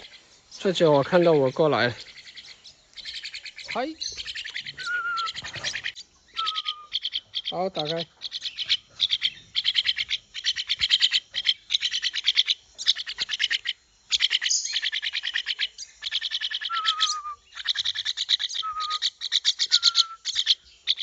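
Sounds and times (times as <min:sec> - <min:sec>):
young mynas chattering begging calls: 0:00.0 - 0:15.0.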